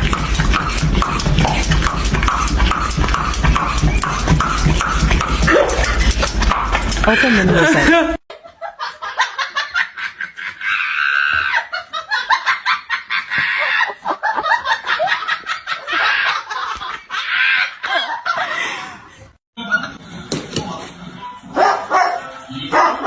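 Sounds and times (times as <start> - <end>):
people laughing: 3.7 - 20.3.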